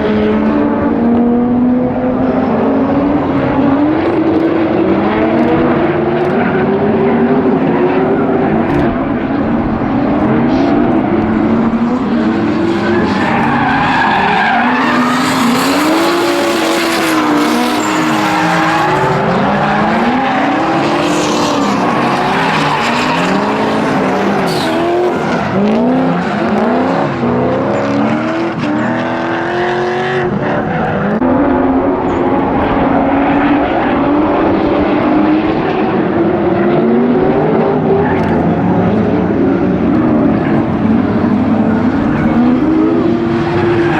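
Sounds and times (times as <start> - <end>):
car engines revving: 0.0 - 43.9
tyre squeal and skidding: 10.3 - 28.2.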